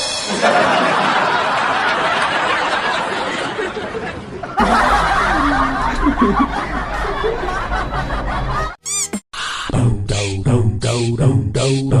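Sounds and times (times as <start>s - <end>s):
people laughing and snickering: 0.3s - 9.2s.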